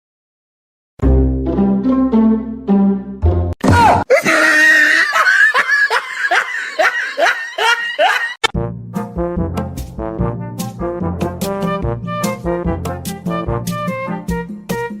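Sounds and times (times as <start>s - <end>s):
shrieking laughter: 4.1s - 8.4s
upbeat brass music: 8.4s - 15.0s.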